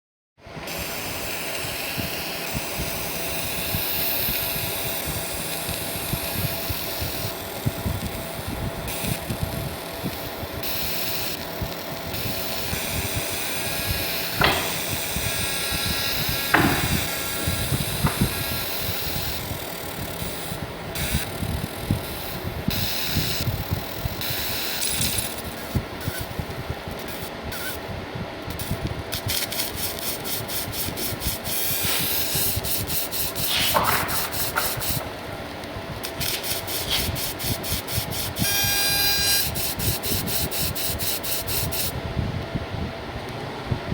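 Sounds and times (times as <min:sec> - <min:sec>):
machinery running: 0:12.1 - 0:27.8, 0:28.5 - 0:41.4.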